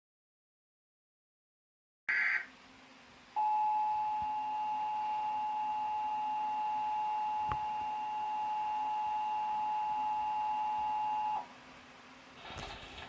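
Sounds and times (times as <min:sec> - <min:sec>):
two-tone attention signal: 0:03.4 - 0:11.4.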